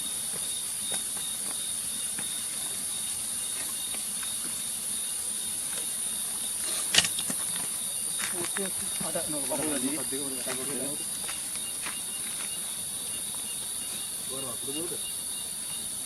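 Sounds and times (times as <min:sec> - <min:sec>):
insects chorus: 0:00.0 - 0:16.0.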